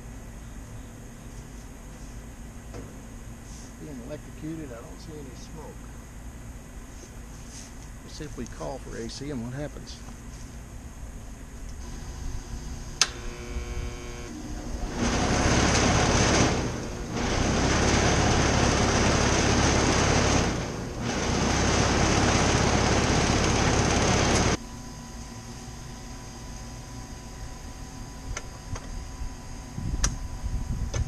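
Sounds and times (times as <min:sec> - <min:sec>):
air conditioner unit running: 0:00.0 - 0:31.0
contactor click: 0:13.0 - 0:14.3.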